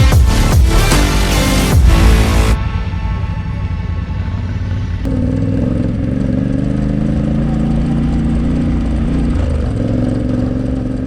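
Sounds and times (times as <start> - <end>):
off-road vehicle engine running: 3.8 - 11.0.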